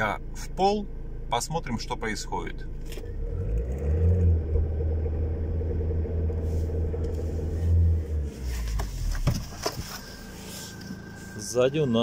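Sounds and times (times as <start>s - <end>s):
diesel engine at full throttle: 2.8s - 12.0s.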